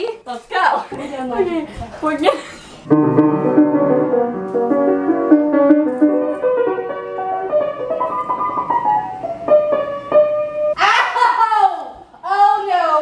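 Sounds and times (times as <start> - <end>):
piano melody: 2.9 - 10.8.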